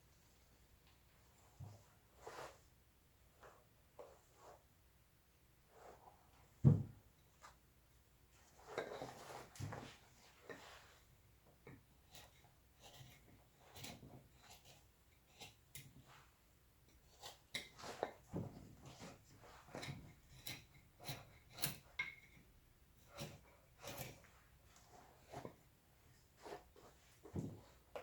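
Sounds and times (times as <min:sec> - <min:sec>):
blade carving wood: 0:19.7 - 0:21.9, 0:23.0 - 0:24.2.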